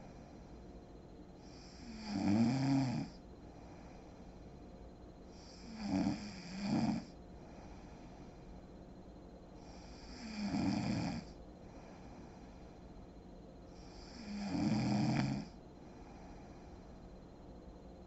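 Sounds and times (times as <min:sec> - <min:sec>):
woman snoring: 0:01.4 - 0:03.2, 0:05.3 - 0:07.2, 0:09.6 - 0:11.4, 0:13.8 - 0:15.6.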